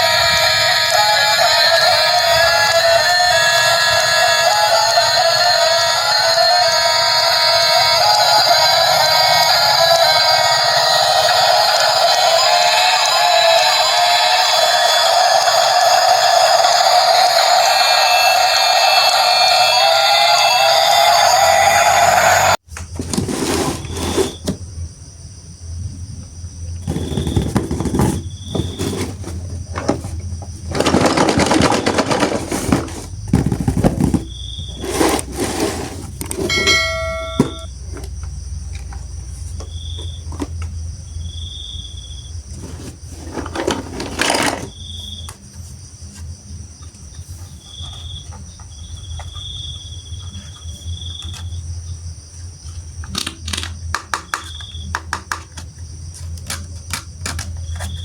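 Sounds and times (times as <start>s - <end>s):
rustling and handling noise: 22.7s - 24.6s, 26.9s - 38.1s, 42.5s - 46.3s
falling chime-like tones: 36.5s - 37.7s.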